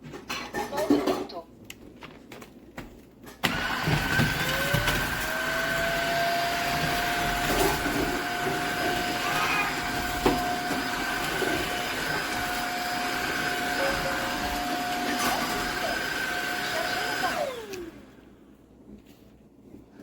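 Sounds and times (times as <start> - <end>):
vacuum cleaner motor whine: 3.4 - 18.3.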